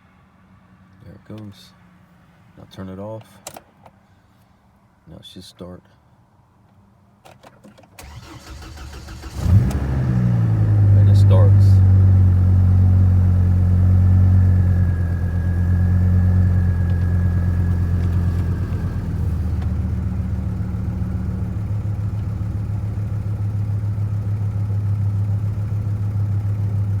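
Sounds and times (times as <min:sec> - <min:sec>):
engine idling: 0:08.0 - 0:27.0.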